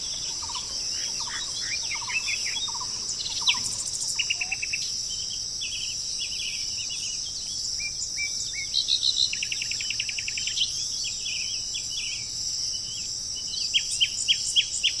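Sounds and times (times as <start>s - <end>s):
fast bird trill: 0.0s - 5.0s
birds chirping and calling: 0.0s - 5.8s
high-pitched insect drone: 0.0s - 6.8s.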